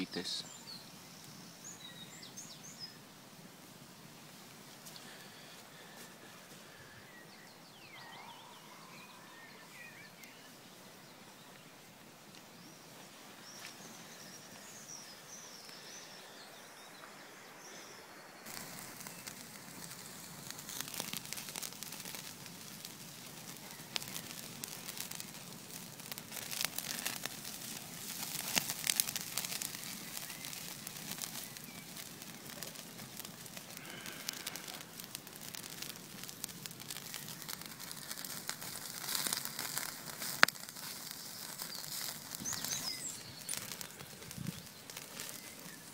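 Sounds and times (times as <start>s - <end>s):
campfire crackling: 0.0s - 45.9s
faint bird chirps: 4.9s - 11.7s, 41.6s - 45.9s.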